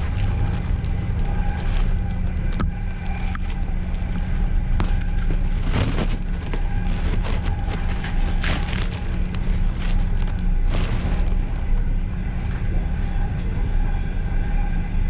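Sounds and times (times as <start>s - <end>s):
train carriage rumbling on rails: 0.0s - 15.0s.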